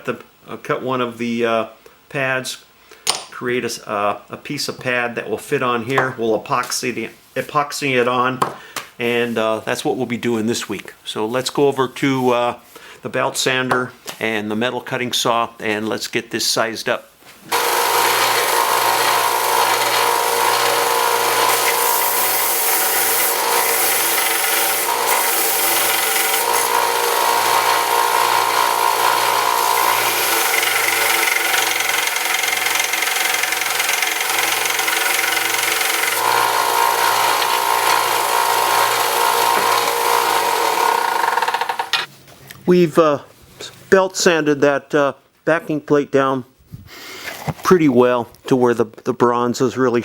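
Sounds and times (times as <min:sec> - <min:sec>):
belt sander grinding metal: 0:17.5 - 0:42.1
motor hum: 0:17.5 - 0:42.1.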